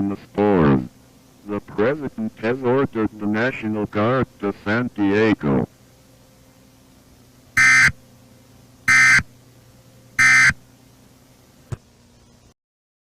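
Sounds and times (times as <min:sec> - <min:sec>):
faint low hum: 0:00.0 - 0:12.6
buzzing data tones: 0:07.6 - 0:08.0, 0:08.9 - 0:09.3, 0:10.2 - 0:10.6.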